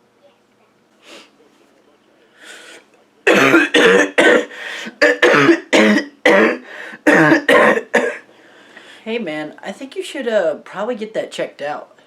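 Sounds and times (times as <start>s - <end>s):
man coughing: 3.3s - 8.2s.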